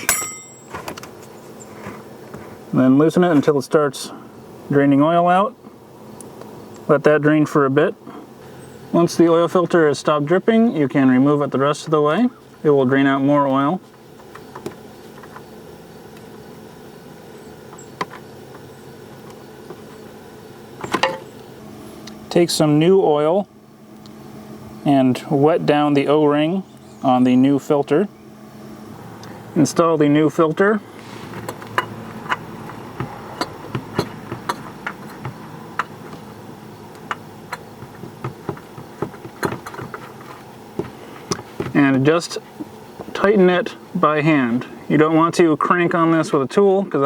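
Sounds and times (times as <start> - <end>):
steady low hum: 0.0 - 47.0
oil filter being unscrewed: 30.9 - 41.8
clatter of knocks: 37.1 - 41.8.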